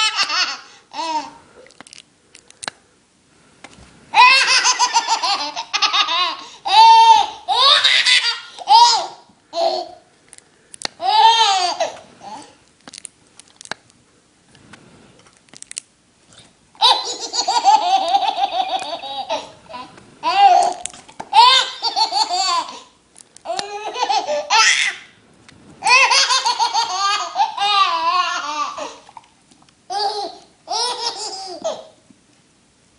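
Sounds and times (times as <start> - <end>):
high-pitched laughter: 4.2 - 9.1, 16.8 - 19.9.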